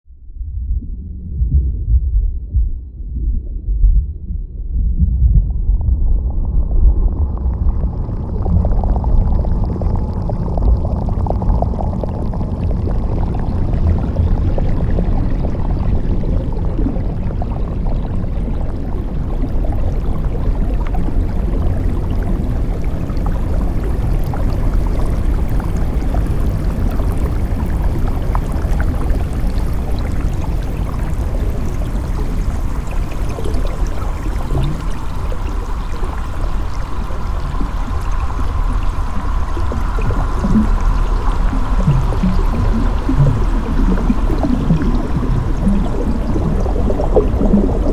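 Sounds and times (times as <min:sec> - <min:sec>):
low rumble of moving water: 0:00.0 - 0:47.9
faint crackles: 0:16.7 - 0:47.9.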